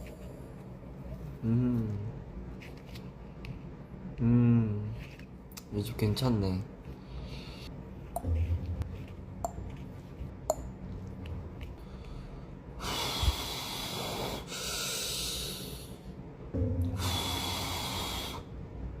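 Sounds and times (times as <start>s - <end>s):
person sniffing and breathing hard: 11.8s - 16.0s, 16.9s - 18.5s.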